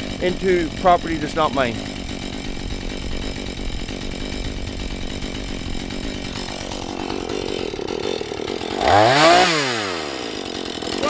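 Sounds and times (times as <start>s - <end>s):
chainsaw idling and revving: 0.0s - 11.0s.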